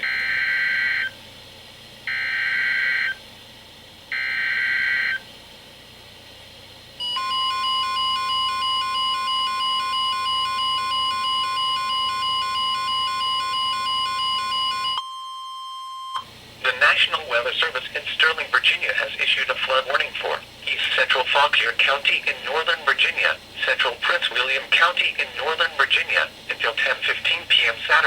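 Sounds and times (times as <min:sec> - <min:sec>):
steady warning alarm tone: 0:00.0 - 0:01.2, 0:02.1 - 0:03.2, 0:04.1 - 0:05.2, 0:07.0 - 0:15.1.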